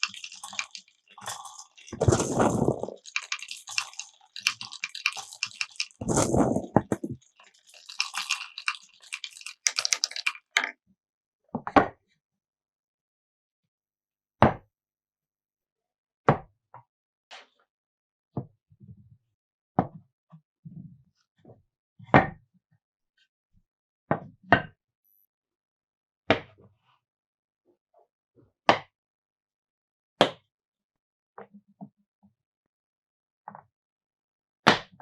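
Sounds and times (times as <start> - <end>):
glass marbles clattering on wood: 0.0 - 10.7.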